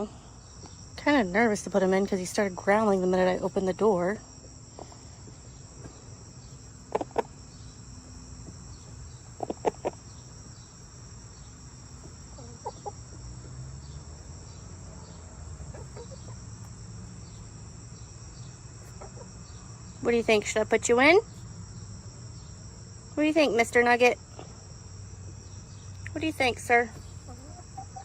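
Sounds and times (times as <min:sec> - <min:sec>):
crickets chirring: 0:00.0 - 0:28.0
chicken clucking: 0:06.8 - 0:07.4, 0:09.3 - 0:10.1, 0:12.3 - 0:13.3, 0:15.6 - 0:16.5, 0:18.8 - 0:19.4, 0:26.9 - 0:28.0.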